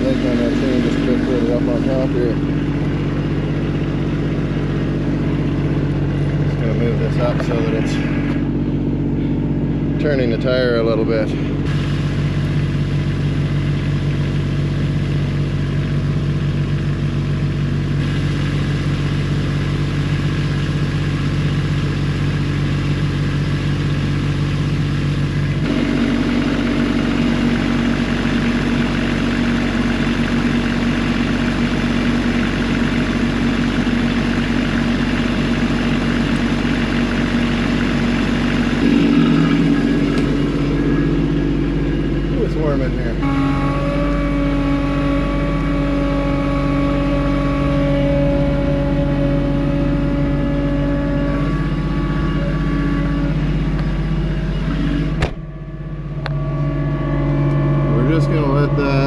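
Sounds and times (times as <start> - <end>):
truck engine running: 0.0 - 59.0.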